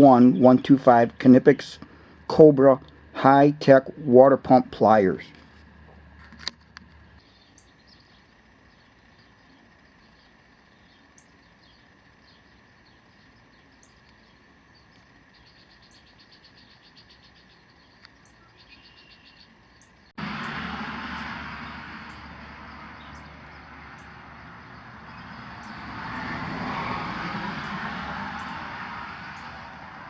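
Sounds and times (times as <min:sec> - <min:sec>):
thin high chirps and trills: 0:07.2 - 0:20.1.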